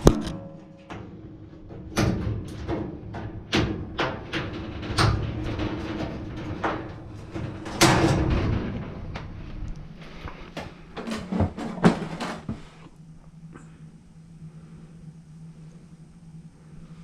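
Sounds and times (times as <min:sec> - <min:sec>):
knocks and clunks of parts: 0:00.0 - 0:12.9.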